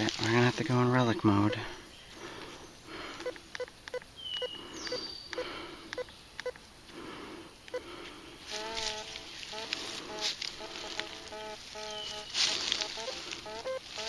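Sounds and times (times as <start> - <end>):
short electronic beeps: 1.4 - 1.8, 3.2 - 6.6, 8.6 - 14.0.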